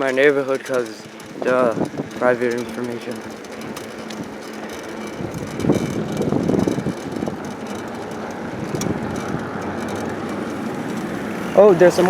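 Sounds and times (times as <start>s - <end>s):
bicycle tyre noise: 0.0s - 12.0s
wind rushing over microphone: 1.2s - 2.9s, 5.1s - 12.0s.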